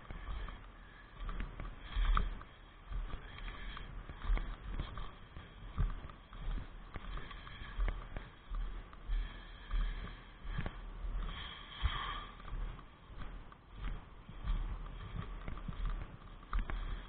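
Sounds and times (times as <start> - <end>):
footsteps walking: 0.0 - 17.0.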